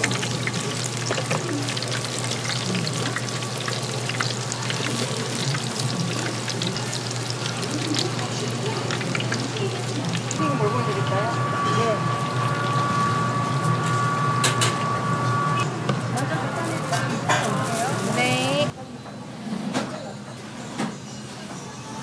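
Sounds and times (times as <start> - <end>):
hot oil sizzling and popping: 0.0 - 15.0.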